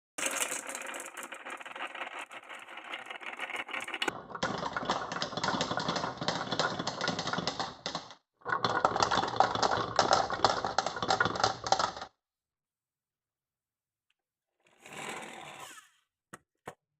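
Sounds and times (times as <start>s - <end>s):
marbles rattling down wooden run: 0.2s - 12.1s.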